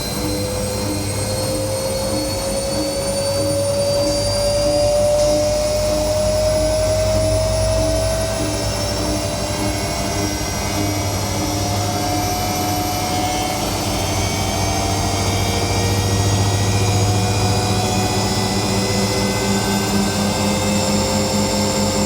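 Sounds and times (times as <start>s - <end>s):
washing machine spinning: 0.0s - 22.0s.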